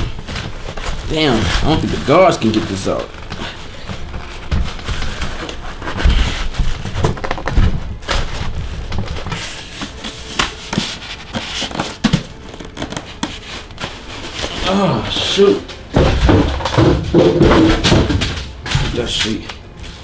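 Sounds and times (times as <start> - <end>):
packaging crackling and rustling: 0.0 - 20.0
knocks and low thumps: 15.5 - 19.1.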